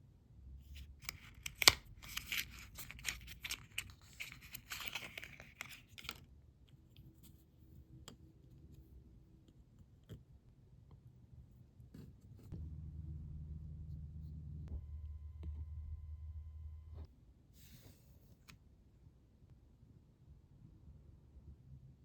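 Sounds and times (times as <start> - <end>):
crackly rustling of craft materials: 0.7 - 10.2.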